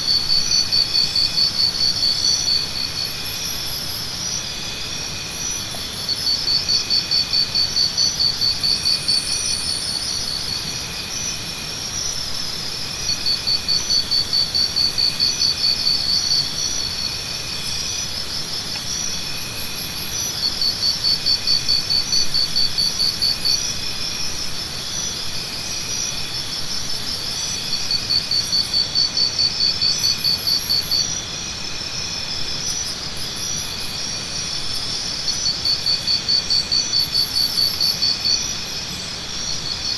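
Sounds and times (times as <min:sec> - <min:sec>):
insects chirping and trilling: 0:00.0 - 0:39.9
loud pulsing insect trill: 0:00.0 - 0:39.9.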